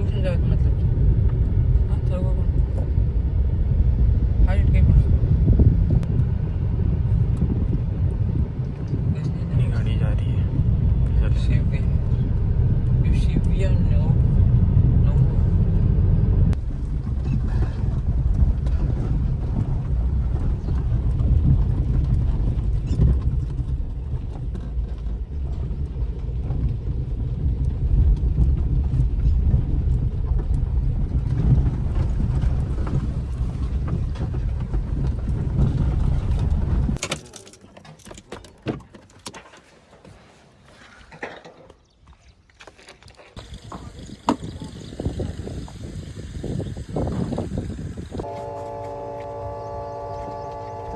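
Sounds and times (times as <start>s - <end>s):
heavy diesel engine running: 44.8s - 50.9s.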